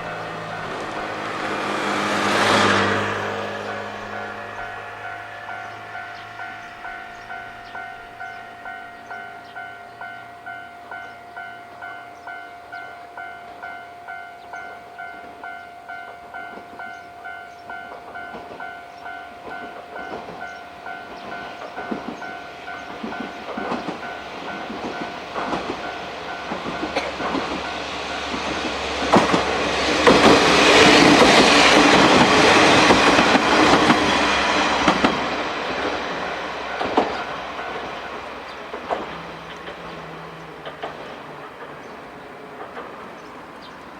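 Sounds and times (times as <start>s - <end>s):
level-crossing bell chiming: 0.0s - 1.7s, 2.5s - 28.5s, 36.1s - 38.7s
train wheels clacking on rails: 0.0s - 43.9s.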